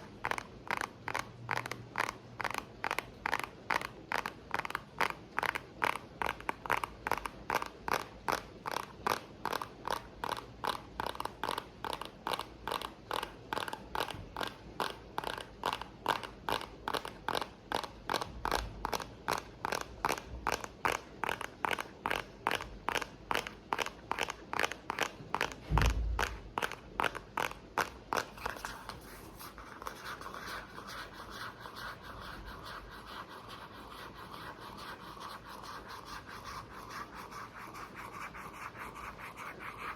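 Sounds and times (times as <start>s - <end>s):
low thump: 25.7s - 26.2s.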